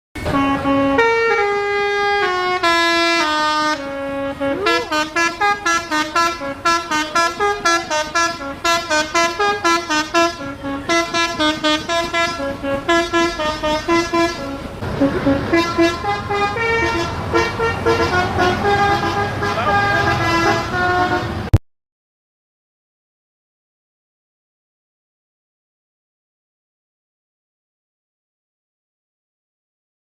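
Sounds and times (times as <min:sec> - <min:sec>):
musical bus horn melody: 0:00.2 - 0:21.6.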